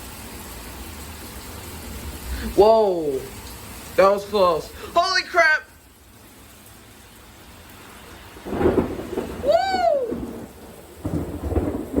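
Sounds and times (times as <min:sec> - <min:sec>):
rain hiss: 0:00.0 - 0:12.0
thunder rumbling: 0:08.2 - 0:12.0.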